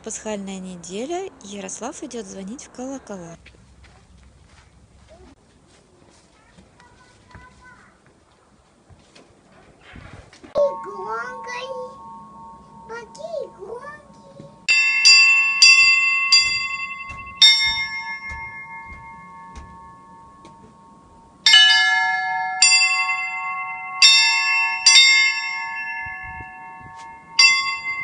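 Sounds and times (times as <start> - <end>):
hand-rung church bells: 10.6 - 28.0.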